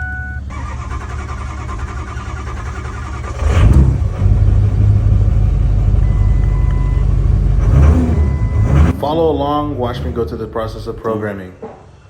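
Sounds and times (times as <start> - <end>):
engine cranking on starter: 0.5 - 5.0.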